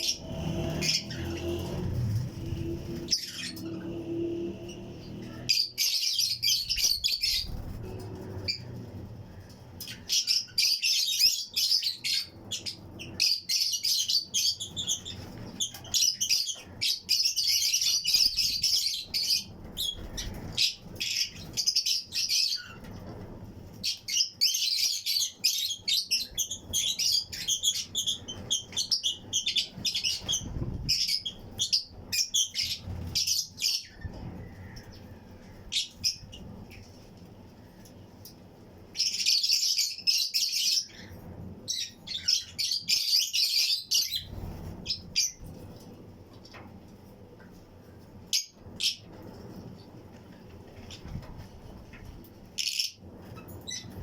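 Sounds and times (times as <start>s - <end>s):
lovebirds chirping: 0.0s - 8.8s, 23.7s - 37.0s.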